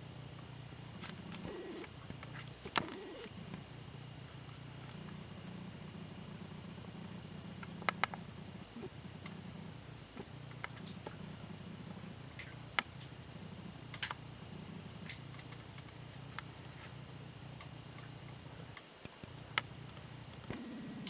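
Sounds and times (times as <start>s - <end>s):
steady low hum: 0.0s - 21.0s.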